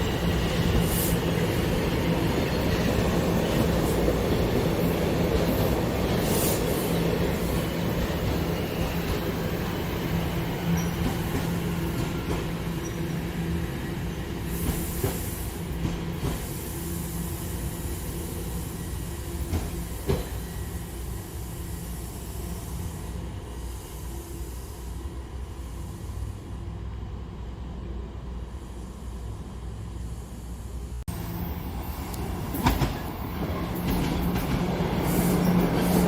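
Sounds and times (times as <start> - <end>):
subway train on tracks: 0.0 - 36.0.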